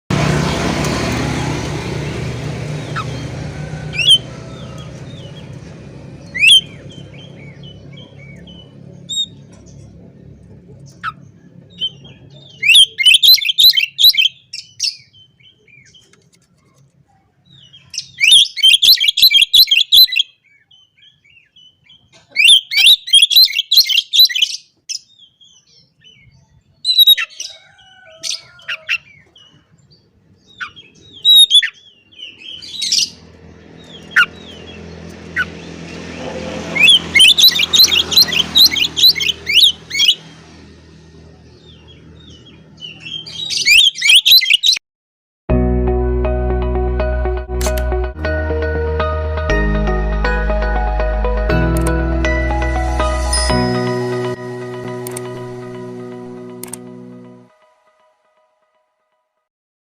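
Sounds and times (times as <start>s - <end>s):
bird singing: 2.0s - 16.8s, 17.4s - 44.8s
rising whistles: 6.3s - 7.1s, 36.8s - 40.4s.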